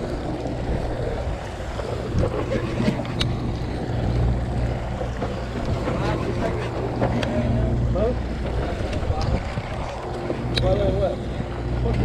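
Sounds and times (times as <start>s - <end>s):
boat engines droning: 0.0s - 12.0s
water noise: 0.0s - 12.0s
wind: 0.0s - 12.0s.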